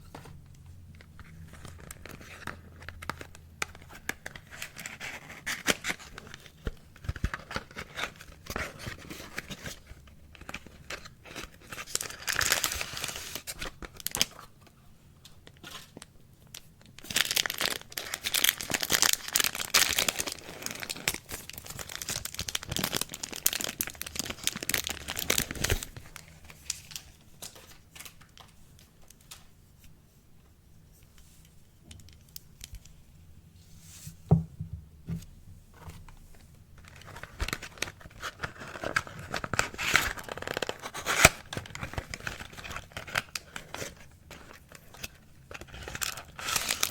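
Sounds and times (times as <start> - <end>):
packaging tearing and crinkling: 10.4 - 14.4, 17.0 - 28.4, 36.8 - 46.9.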